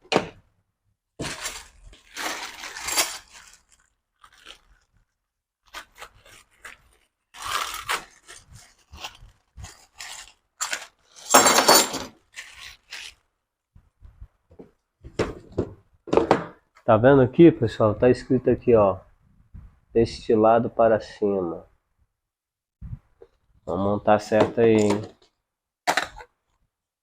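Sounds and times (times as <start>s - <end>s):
packaging crunching: 1.2s - 11.4s, 12.2s - 13.2s.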